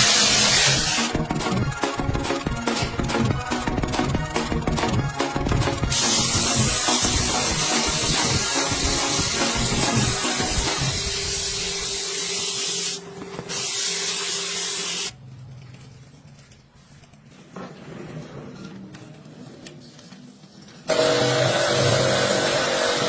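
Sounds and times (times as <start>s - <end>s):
pressure washer spraying: 0.0s - 1.2s, 5.9s - 15.1s.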